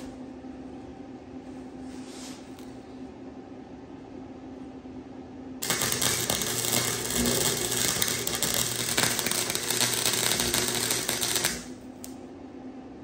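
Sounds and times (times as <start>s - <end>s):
arc welder crackling: 5.6s - 12.2s.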